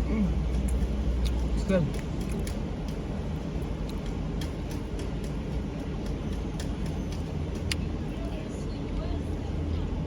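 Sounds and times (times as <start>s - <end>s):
low background rumble: 0.0s - 10.0s
person chewing food: 0.1s - 7.8s.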